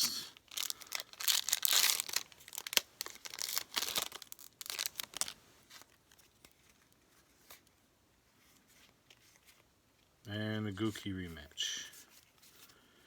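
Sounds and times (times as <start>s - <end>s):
foil wrapper tearing and crinkling: 0.4s - 6.0s.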